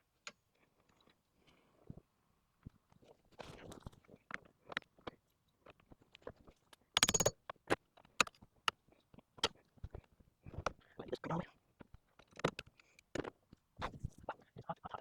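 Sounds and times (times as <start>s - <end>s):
metal nut clicking and clinking: 7.0s - 7.3s.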